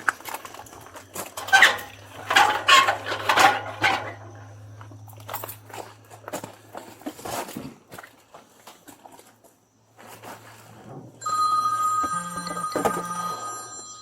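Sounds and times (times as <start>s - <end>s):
phone ringing: 11.2s - 14.0s.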